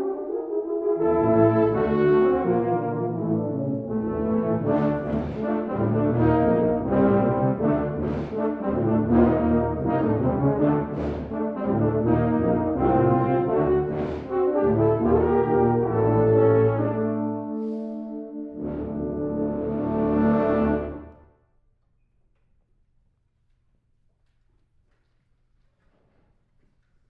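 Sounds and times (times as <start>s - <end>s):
low brass quartet playing: 0.0s - 21.3s.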